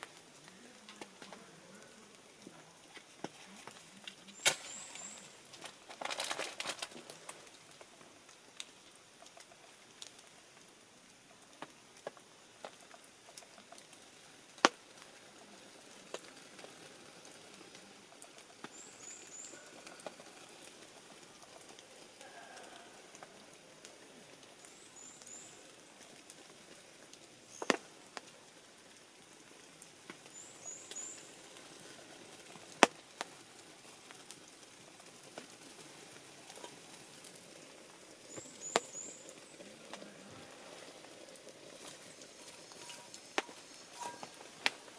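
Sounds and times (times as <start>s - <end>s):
campfire crackling and popping: 0.0s - 44.9s
small bird chirping: 4.2s - 5.5s, 18.5s - 20.0s, 24.6s - 25.8s, 30.3s - 32.0s, 38.1s - 40.0s, 41.7s - 44.9s.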